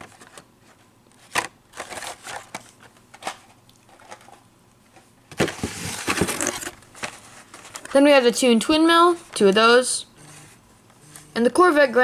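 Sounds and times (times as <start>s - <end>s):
plastic packaging clicking and crinkling: 1.1s - 8.0s.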